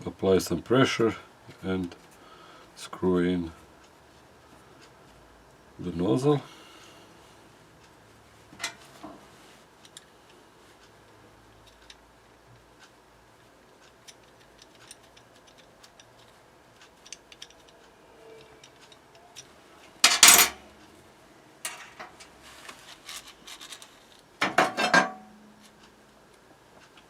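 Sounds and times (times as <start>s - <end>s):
small metallic clicks: 11.6s - 12.0s, 13.8s - 20.5s.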